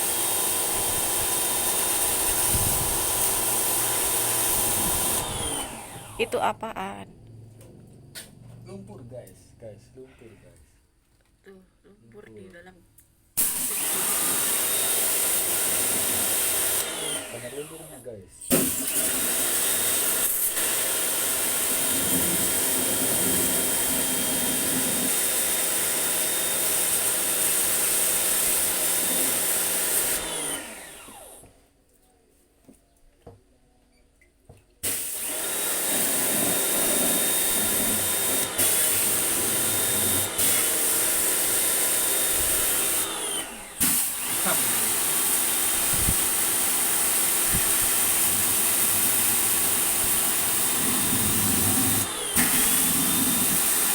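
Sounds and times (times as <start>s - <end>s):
electric motor machine whining: 0.0s - 6.4s, 13.4s - 26.9s, 28.8s - 31.5s, 34.9s - 53.9s.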